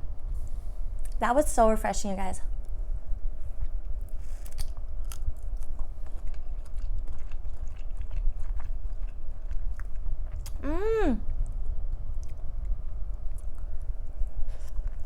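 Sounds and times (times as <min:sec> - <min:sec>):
chewing and biting shrimp: 0:03.6 - 0:10.6.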